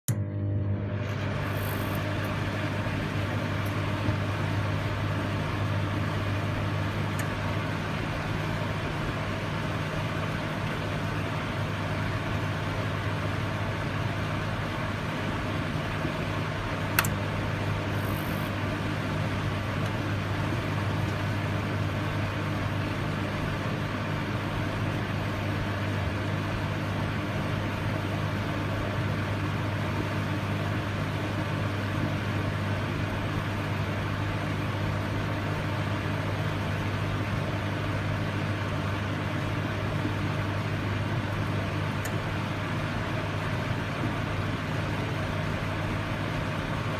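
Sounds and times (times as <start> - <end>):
microwave oven humming: 0.1 - 46.9
sharp click: 16.9 - 17.2.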